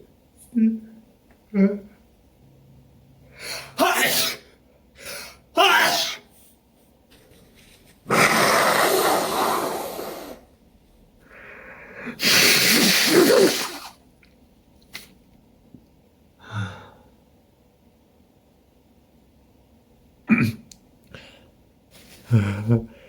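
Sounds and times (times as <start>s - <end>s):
person sneezing: 3.5s - 6.3s, 8.1s - 10.4s, 12.1s - 14.0s
drawn in-breath: 11.2s - 12.9s.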